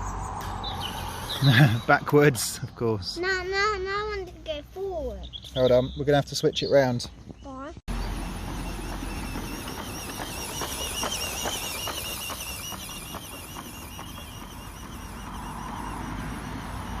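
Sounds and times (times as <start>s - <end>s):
electric motor whining: 7.9s - 17.0s.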